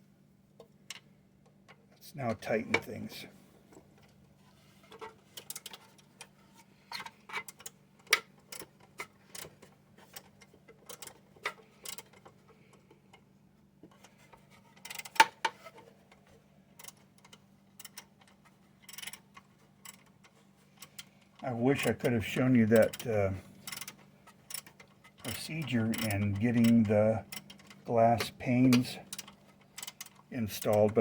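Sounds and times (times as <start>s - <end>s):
faint steady hum: 0.0s - 31.0s
hand tools clicking on metal: 20.8s - 31.0s.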